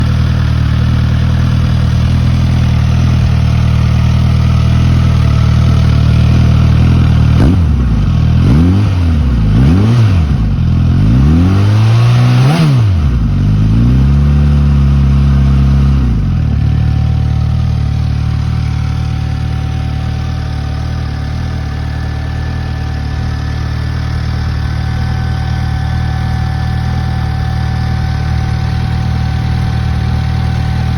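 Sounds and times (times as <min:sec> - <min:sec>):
motorcycle engine idling and revving: 0:00.0 - 0:30.9.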